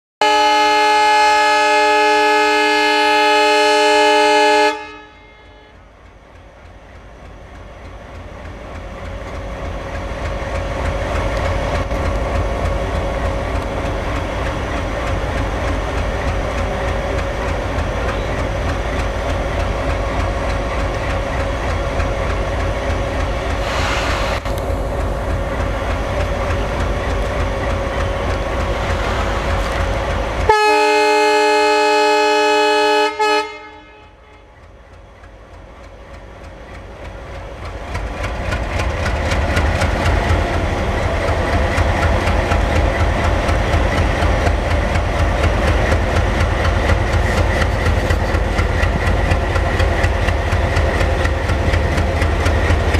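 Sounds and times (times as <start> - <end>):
locomotive air horn: 0.2 - 5.8, 30.5 - 34.5
diesel engine chugging: 6.1 - 31.2, 34.6 - 52.9.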